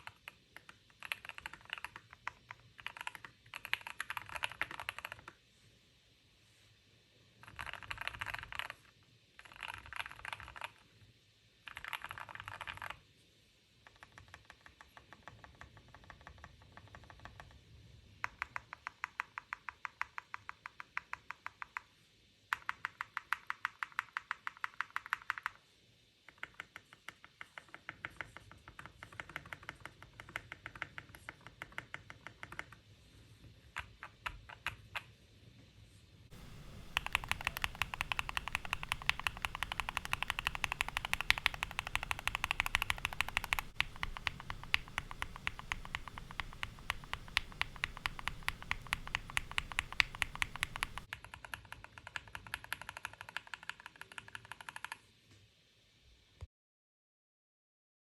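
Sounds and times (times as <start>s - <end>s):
mechanical keyboard typing: 0.0s - 5.4s, 7.4s - 10.9s, 11.7s - 13.0s, 13.9s - 17.6s, 18.2s - 21.9s, 22.5s - 25.6s, 26.3s - 32.8s, 33.7s - 35.1s, 36.3s - 55.0s.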